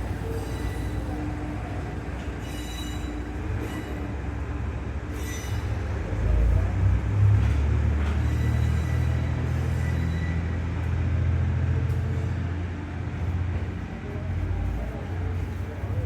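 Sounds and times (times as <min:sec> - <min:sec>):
diesel railcar engine rumble: 0:00.0 - 0:16.0
faint wheel squeal: 0:02.4 - 0:04.2, 0:05.1 - 0:06.0, 0:08.2 - 0:10.6.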